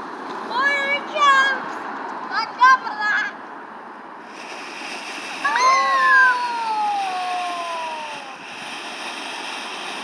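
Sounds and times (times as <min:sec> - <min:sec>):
firework fountain hissing: 0:04.2 - 0:10.0
child crying: 0:05.5 - 0:08.4.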